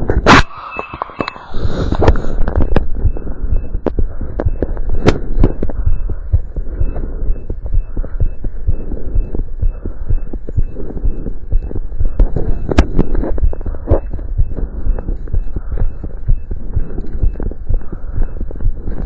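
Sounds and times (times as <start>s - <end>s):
heartbeat thumping: 0.0s - 19.0s.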